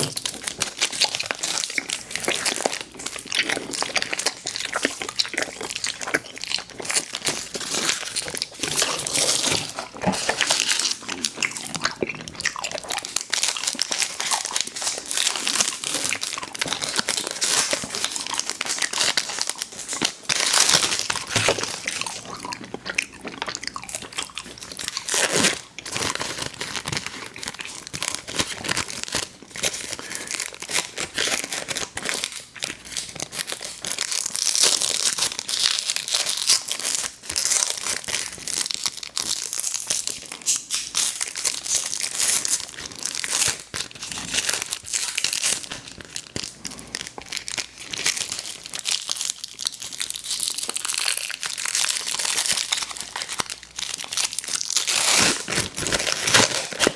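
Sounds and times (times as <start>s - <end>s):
chewing candy: 0.0s - 56.9s
plastic wrappers crinkling: 0.0s - 56.9s.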